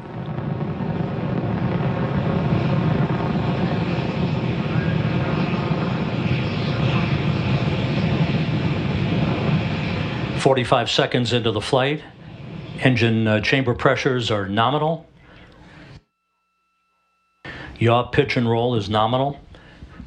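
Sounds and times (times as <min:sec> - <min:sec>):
rocket engines rumbling: 0:00.0 - 0:16.0.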